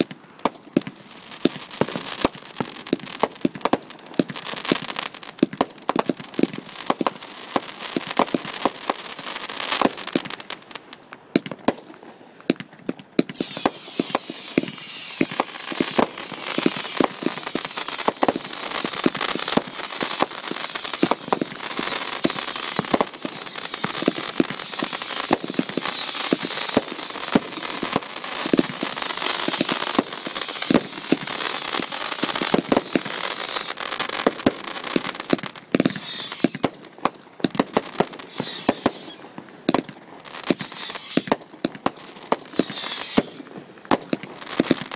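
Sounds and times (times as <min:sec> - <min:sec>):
fireworks crackling barrage: 0:00.0 - 0:44.9
fireworks pops and bangs: 0:00.0 - 0:44.9
whistle falling in pitch: 0:13.3 - 0:33.8, 0:35.6 - 0:36.8, 0:38.0 - 0:39.4, 0:40.3 - 0:41.5, 0:42.2 - 0:43.6, 0:44.6 - 0:44.9.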